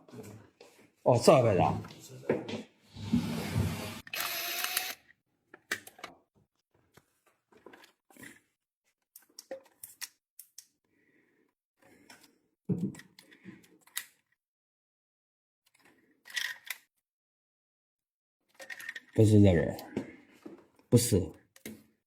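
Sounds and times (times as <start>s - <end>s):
hands handling wiring and tools: 6.8s - 10.9s.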